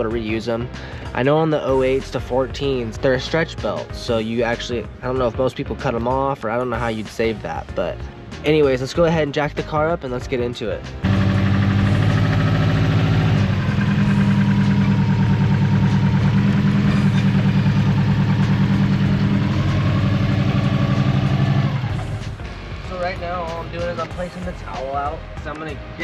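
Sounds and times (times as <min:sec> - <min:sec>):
car engine idling: 0:11.0 - 0:24.8.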